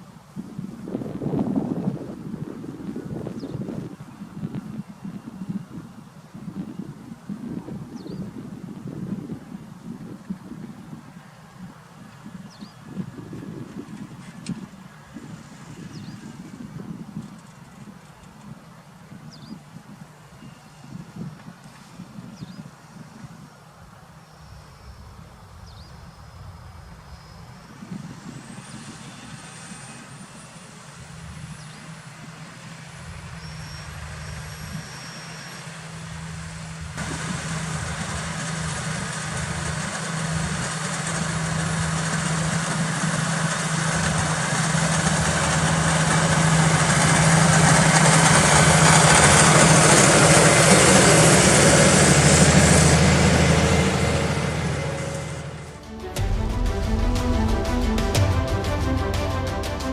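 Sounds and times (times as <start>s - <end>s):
tractor diesel engine under load: 27.9s - 59.9s
thin high whine: 45.5s - 59.9s.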